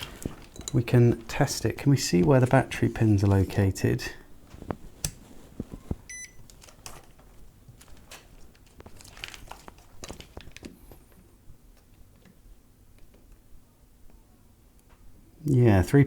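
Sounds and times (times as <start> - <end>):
short electronic beep: 6.1 - 6.4.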